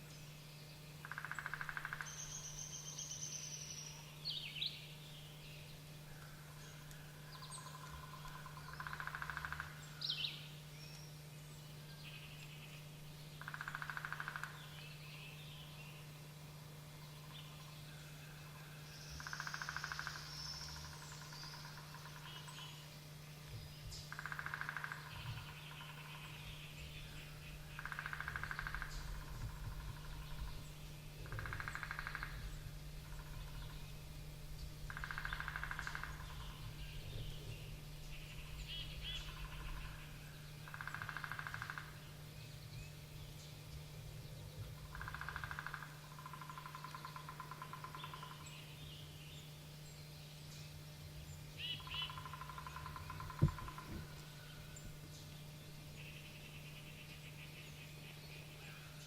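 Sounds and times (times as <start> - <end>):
steady low hum: 0.0 - 59.0
small birds chirping: 19.0 - 59.0.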